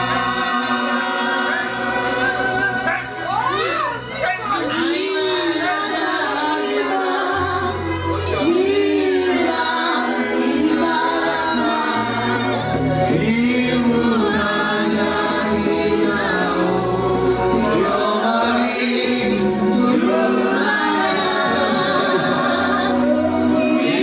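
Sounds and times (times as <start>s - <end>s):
church choir singing: 0.0s - 24.0s.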